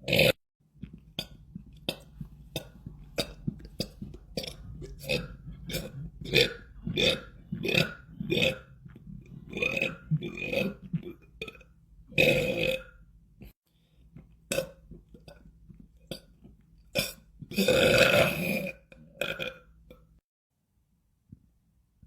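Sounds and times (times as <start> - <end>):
man belching: 17.0 - 19.6.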